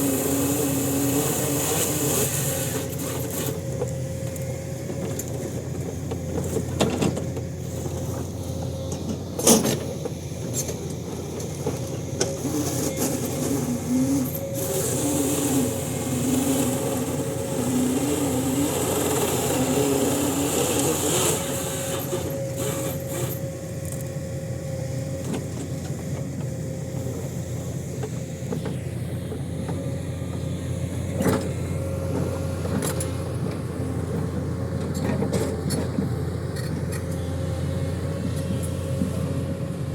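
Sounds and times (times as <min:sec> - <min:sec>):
heavy machine engine running: 0:00.0 - 0:39.9
wavering whine: 0:12.2 - 0:25.3.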